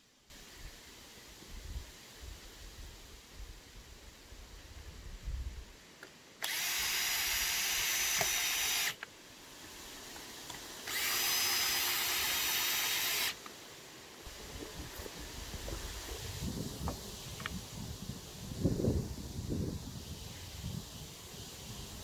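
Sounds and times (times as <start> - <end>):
power drill running: 6.4 - 9.0, 10.8 - 13.4.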